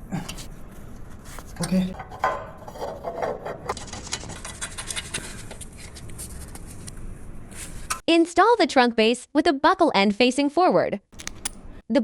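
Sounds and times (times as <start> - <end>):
parts scraping and rubbing: 0.2 - 6.9.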